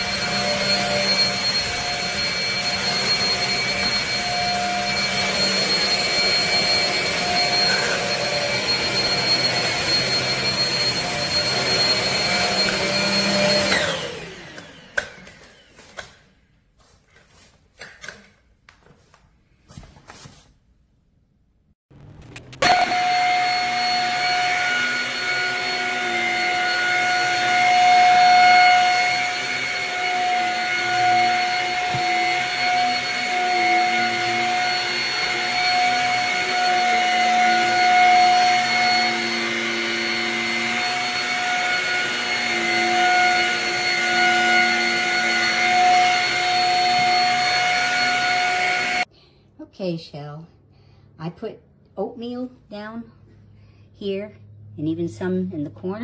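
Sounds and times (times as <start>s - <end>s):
vacuum motor winding down: 0.0s - 16.0s, 21.9s - 49.1s
vacuum motor whine: 0.0s - 16.2s, 21.9s - 49.1s.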